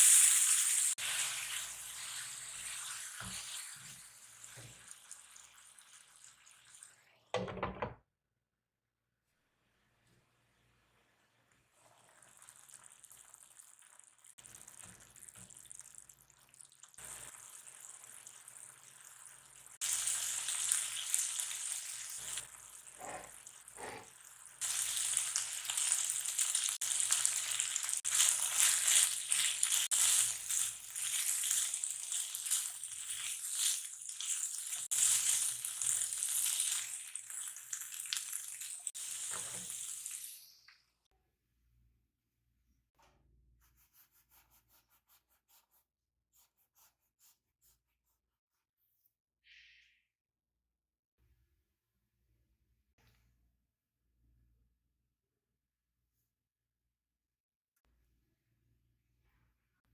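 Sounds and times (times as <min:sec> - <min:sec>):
food sizzling in hot oil: 0:00.0 - 0:07.2, 0:11.8 - 0:40.7.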